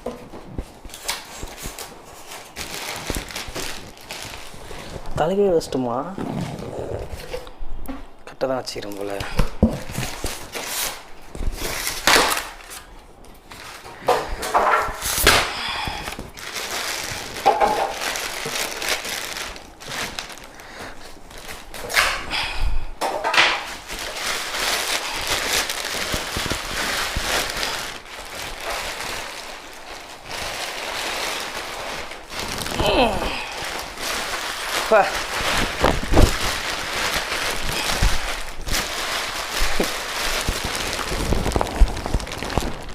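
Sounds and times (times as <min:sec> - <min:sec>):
cardboard packaging rustling: 0:00.0 - 0:07.5, 0:08.7 - 0:42.9
cardboard ripping: 0:09.7 - 0:12.9, 0:23.6 - 0:42.9.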